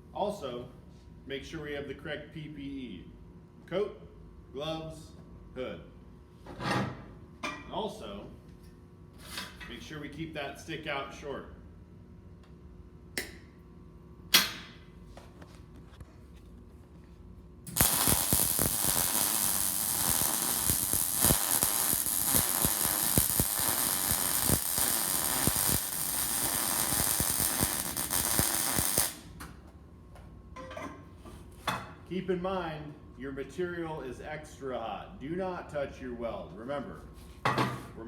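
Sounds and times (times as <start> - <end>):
welding arc crackling: 17.7 - 29.3.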